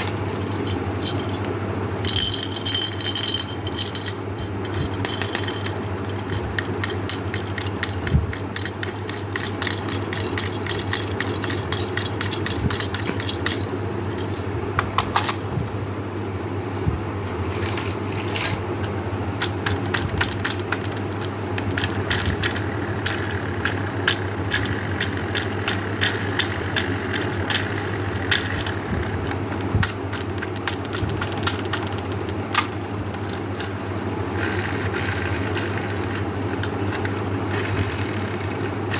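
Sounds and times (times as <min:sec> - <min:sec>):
steady low hum: 0:00.0 - 0:38.9.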